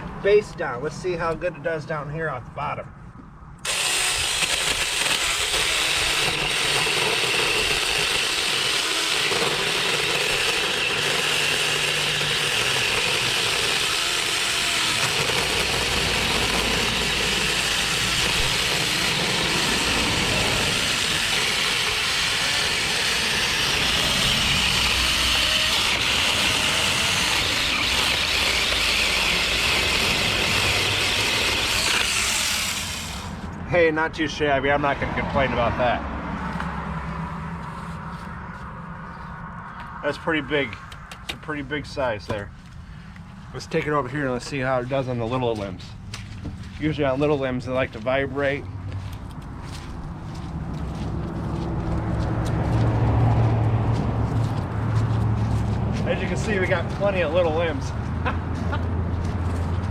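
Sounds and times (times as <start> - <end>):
electric chainsaw cutting tree trunk: 3.6 - 33.5, 56.1 - 58.0.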